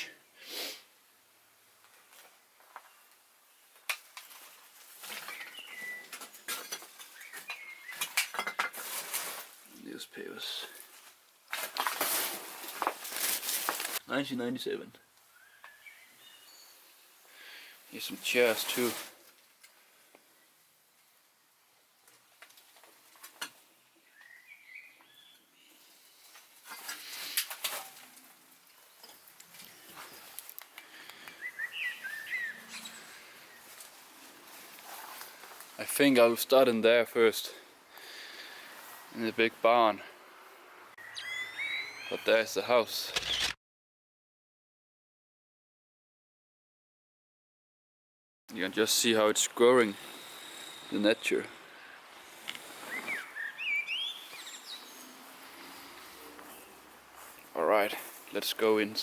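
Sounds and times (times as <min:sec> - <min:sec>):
rustling: 0:04.0 - 0:09.8, 0:10.7 - 0:14.0, 0:18.0 - 0:19.9, 0:32.6 - 0:36.4
bird call: 0:31.3 - 0:33.3, 0:41.0 - 0:42.3, 0:52.6 - 0:55.3
sharp clicks: 0:43.1 - 0:43.6.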